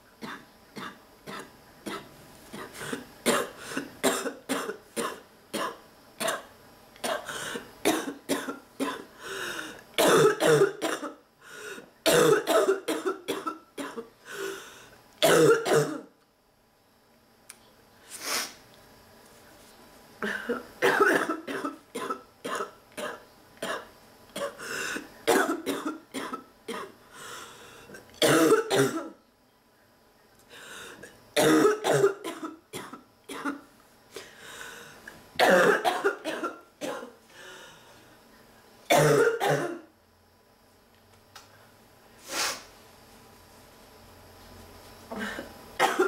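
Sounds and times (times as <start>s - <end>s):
person barking cough: 2.6s - 7.3s, 10.0s - 11.2s, 12.1s - 14.0s, 15.2s - 16.1s, 20.3s - 24.6s, 25.3s - 26.9s, 28.2s - 29.1s, 31.4s - 33.6s, 35.4s - 37.1s, 38.9s - 39.8s, 45.2s - 46.0s.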